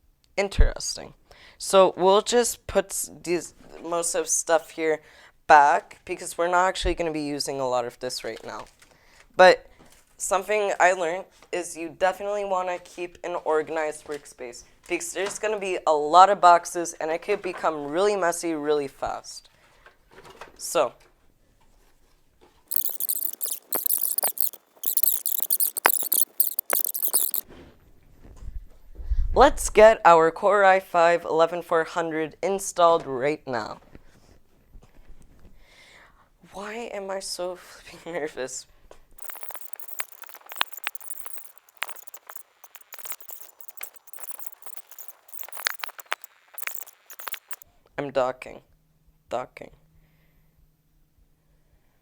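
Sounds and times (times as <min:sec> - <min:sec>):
light clicks and ticks: 0:22.7 - 0:27.4, 0:39.2 - 0:47.6
sharp clicks: 0:22.7 - 0:27.4, 0:39.2 - 0:47.6.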